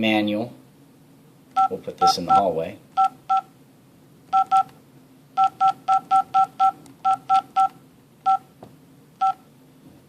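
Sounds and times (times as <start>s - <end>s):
touchscreen key-press beeps: 3.0s - 3.5s, 4.3s - 4.7s, 5.4s - 8.4s, 9.2s - 9.4s.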